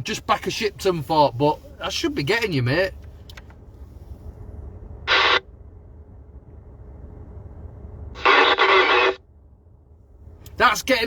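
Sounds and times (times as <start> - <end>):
low steady rumble: 0.0 - 11.0
radio static bursts: 5.1 - 5.4, 8.2 - 9.2.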